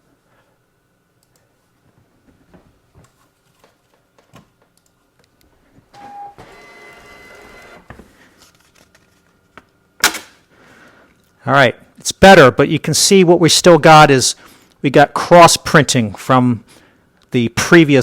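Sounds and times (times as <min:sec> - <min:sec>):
short printer tone: 0:06.0 - 0:07.9
label printer motor running: 0:06.0 - 0:08.0.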